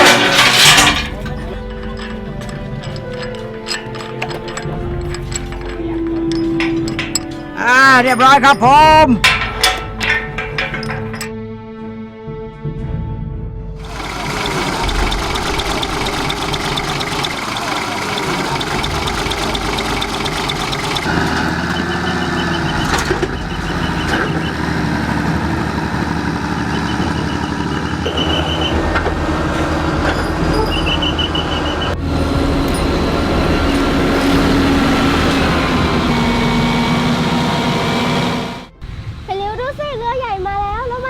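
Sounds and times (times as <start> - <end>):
truck engine running: 0.0 - 7.6, 9.2 - 11.3, 13.8 - 38.8.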